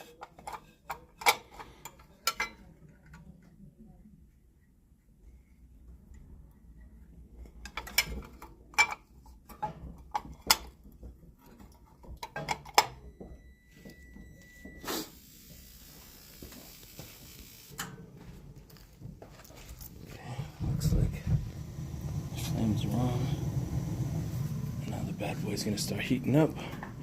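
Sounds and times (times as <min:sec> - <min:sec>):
metal tools clinking: 0:00.0 - 0:02.7.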